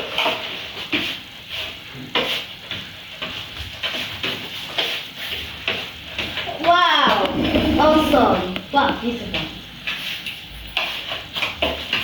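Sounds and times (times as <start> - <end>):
utensil scraping mixing bowl: 7.0 - 8.9.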